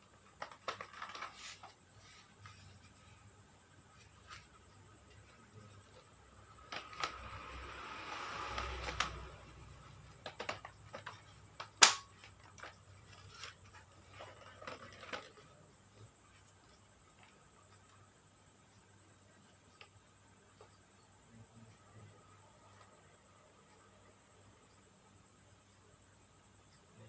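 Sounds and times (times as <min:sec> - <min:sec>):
rustling: 0:00.2 - 0:06.1.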